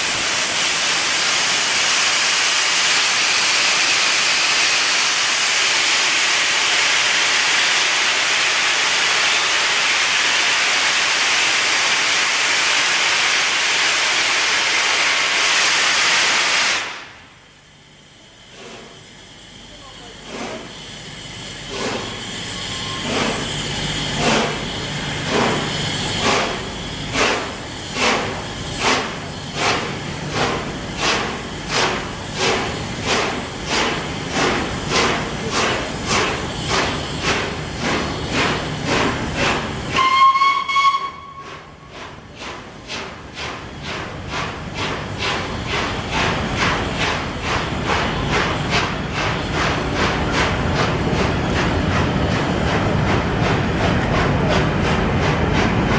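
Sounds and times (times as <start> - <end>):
steam hiss: 0.0 - 55.9
steam locomotive exhaust beats: 0.0 - 55.9
steam locomotive whistle: 39.9 - 41.9.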